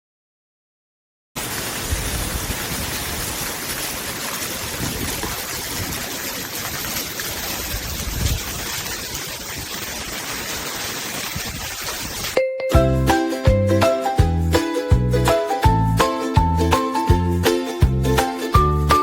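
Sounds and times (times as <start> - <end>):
water running down a rain chain: 1.4 - 12.4.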